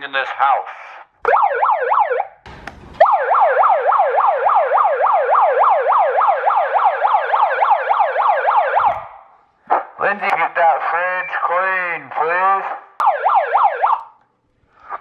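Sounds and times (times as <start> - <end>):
electronic toy siren yelping: 3.0 - 9.8, 13.0 - 14.2.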